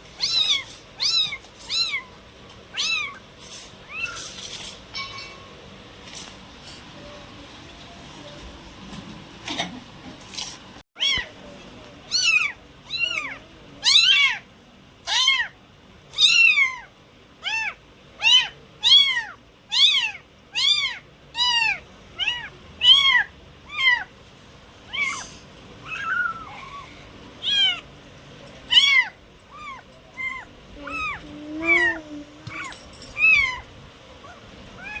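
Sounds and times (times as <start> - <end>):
kitten meowing: 0.2 - 3.2, 11.0 - 11.3, 12.1 - 14.4, 15.1 - 15.6, 17.4 - 24.1, 24.9 - 27.8, 28.7 - 33.6, 34.2 - 35.0.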